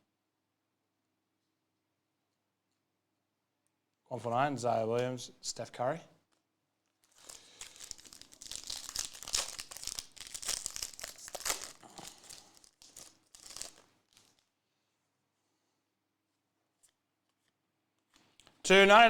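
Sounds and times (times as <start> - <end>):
card pack wrapper crinkling and tearing: 7.0 - 14.6.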